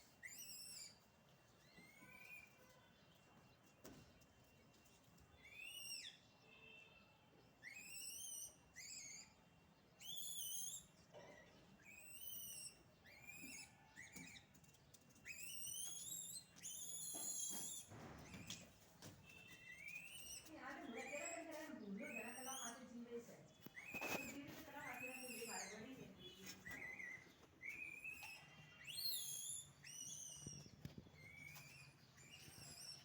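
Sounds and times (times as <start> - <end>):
monkeys whistle-like calls: 7.6 - 9.4, 26.7 - 33.0.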